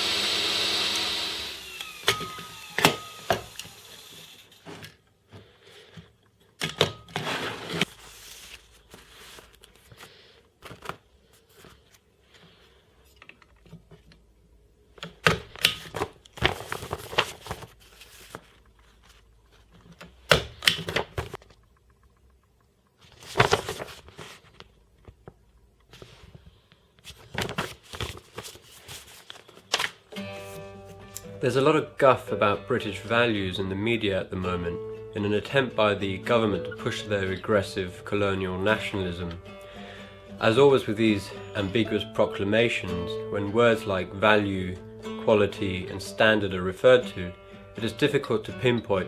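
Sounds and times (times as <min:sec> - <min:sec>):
paper sheets rustling: 0:07.1 - 0:12.8, 0:15.6 - 0:20.1, 0:20.8 - 0:21.5, 0:23.0 - 0:25.3, 0:25.9 - 0:30.7.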